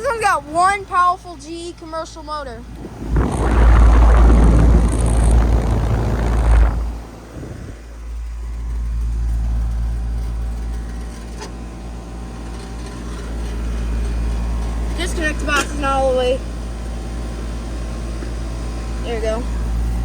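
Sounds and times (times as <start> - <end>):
air conditioner humming: 0.0 - 9.1
loud rushing noise: 2.7 - 8.0.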